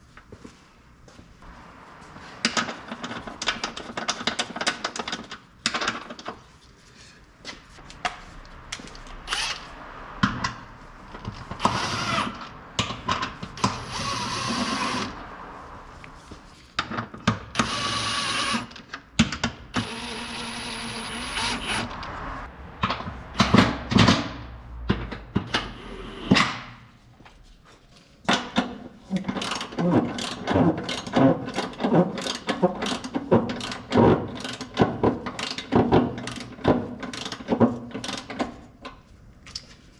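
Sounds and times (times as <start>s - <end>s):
tools clanking and knocking: 10.2s - 15.1s, 28.2s - 39.7s
ratchet wrench clicking: 29.4s - 34.8s.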